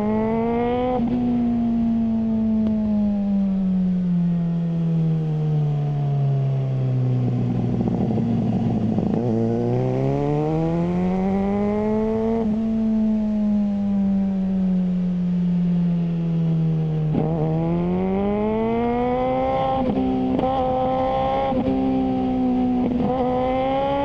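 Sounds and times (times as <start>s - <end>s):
motorcycle engine revving: 0.0s - 1.4s, 7.0s - 14.6s, 17.0s - 24.0s.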